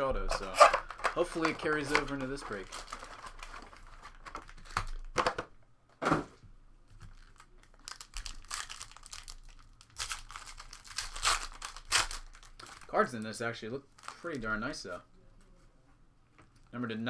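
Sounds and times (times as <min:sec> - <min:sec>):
plastic wrapping tearing and crinkling: 0:00.3 - 0:05.2, 0:07.0 - 0:13.2, 0:14.0 - 0:14.4.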